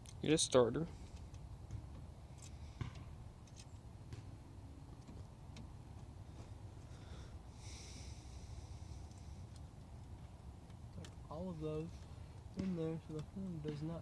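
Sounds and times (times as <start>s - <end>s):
low steady hum: 0.0s - 14.0s
small parts clicking and tapping: 9.0s - 11.3s.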